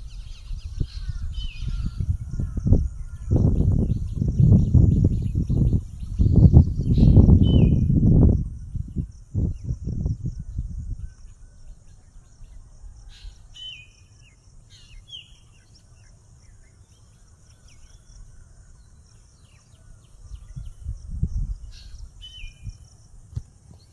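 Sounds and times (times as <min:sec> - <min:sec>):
birds chirping and calling: 0:00.0 - 0:07.9, 0:10.4 - 0:20.9, 0:21.6 - 0:22.8
low rumbling on microphone: 0:00.0 - 0:12.8, 0:20.2 - 0:22.9
high insect drone: 0:00.0 - 0:23.9.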